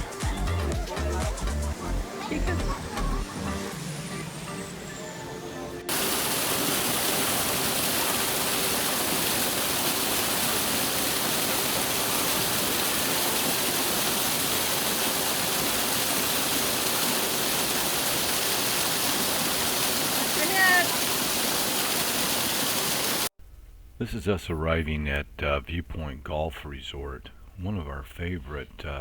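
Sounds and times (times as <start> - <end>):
loud steady hiss: 5.8 - 23.3.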